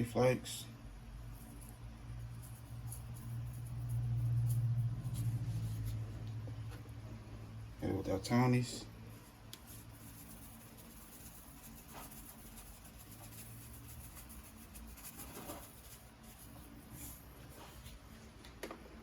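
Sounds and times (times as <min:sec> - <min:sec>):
seasoning shaker rustling: 0:01.3 - 0:06.1, 0:09.1 - 0:18.0.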